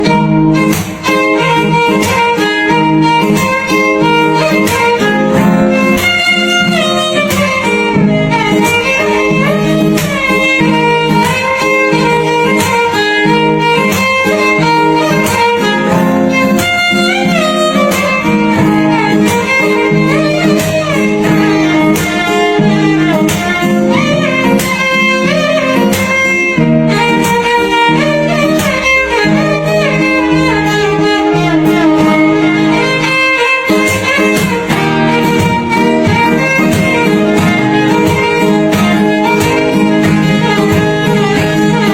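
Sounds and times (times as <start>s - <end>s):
bowed violin melody: 0.0s - 41.9s
low accompaniment with regular beat: 0.0s - 41.9s.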